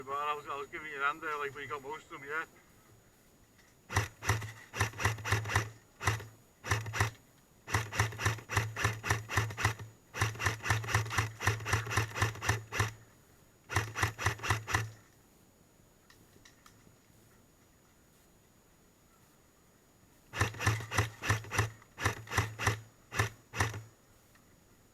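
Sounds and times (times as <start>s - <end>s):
airsoft gun firing bursts: 3.9s - 13.0s, 13.7s - 15.0s, 20.3s - 23.9s.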